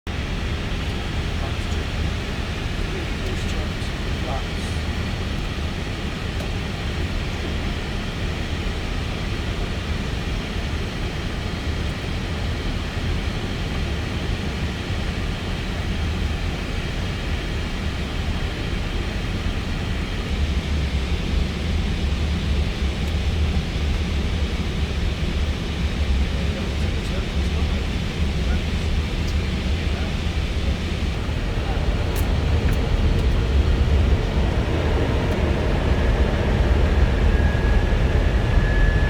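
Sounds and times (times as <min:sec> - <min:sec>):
airflow and engine noise: 0:00.1 - 0:39.0
deep low rumble: 0:28.5 - 0:39.0.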